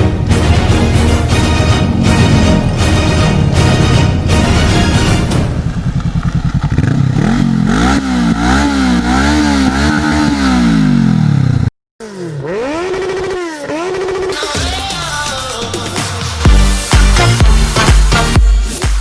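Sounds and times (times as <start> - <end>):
motorcycle engine revving: 0.0 - 14.9.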